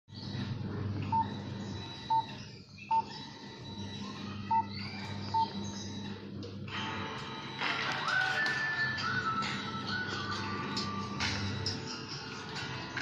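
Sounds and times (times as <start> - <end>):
steady low hum: 0.1 - 13.0
short keypad beeps: 3.8 - 5.6.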